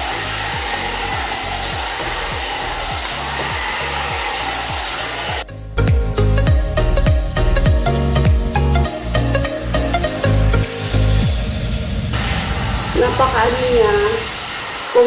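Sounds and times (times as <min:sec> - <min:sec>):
hair dryer brush blowing: 0:00.0 - 0:05.4, 0:12.2 - 0:15.0
dance music beat: 0:00.0 - 0:11.4.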